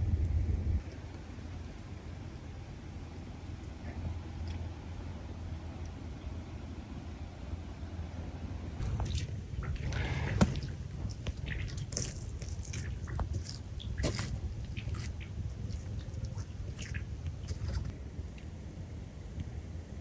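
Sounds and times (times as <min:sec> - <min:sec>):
low steady rumble: 0:00.0 - 0:20.0
clicks and knocks under ice: 0:08.8 - 0:15.3.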